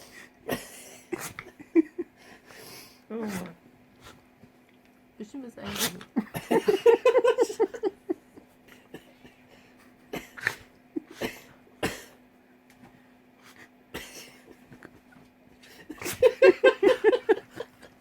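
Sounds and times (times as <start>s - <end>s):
faint steady hum: 0.0s - 18.0s
dog sneezing: 1.1s - 1.5s, 5.6s - 6.2s, 10.2s - 12.2s.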